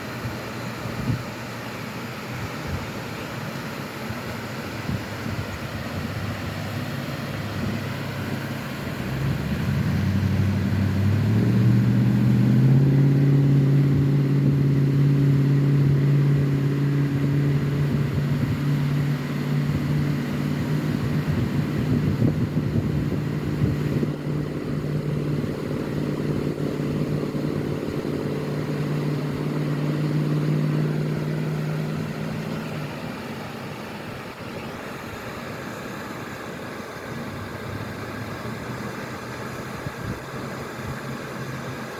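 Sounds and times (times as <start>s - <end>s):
vehicle engine running: 0.0s - 41.9s.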